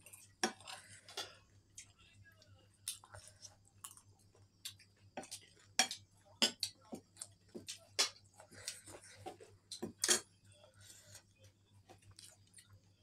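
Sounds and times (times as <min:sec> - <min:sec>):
cutlery clinking on dishes: 0:09.8 - 0:10.3.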